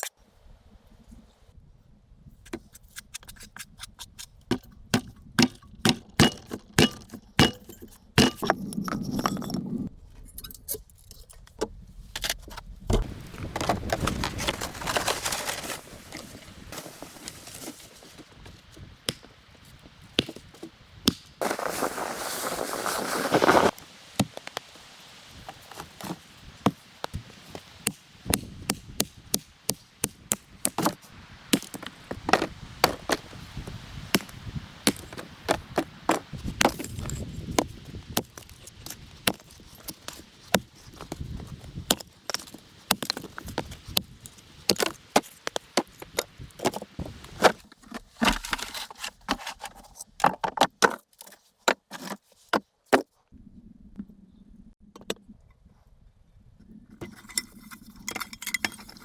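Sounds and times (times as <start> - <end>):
objects knocking and clinking: 4.5 - 9.7, 57.0 - 59.0.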